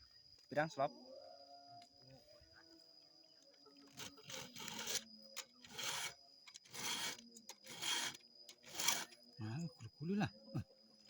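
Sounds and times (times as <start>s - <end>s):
file scraping chainsaw chain: 4.0s - 9.2s.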